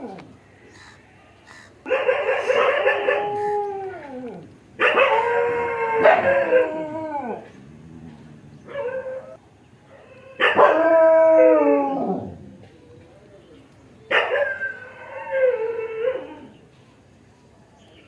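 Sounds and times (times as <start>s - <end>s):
dog howling: 1.9s - 9.4s, 10.0s - 12.5s, 14.3s - 16.6s.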